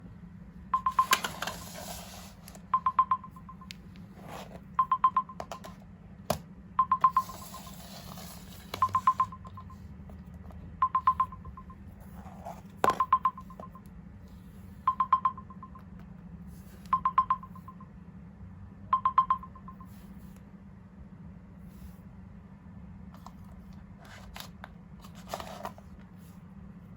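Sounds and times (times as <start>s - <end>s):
phone alarm high beeps: 0.8s - 3.7s, 4.8s - 5.8s, 6.8s - 9.9s, 10.8s - 11.8s, 12.9s - 13.8s, 14.9s - 15.9s, 16.9s - 17.9s, 18.9s - 20.0s.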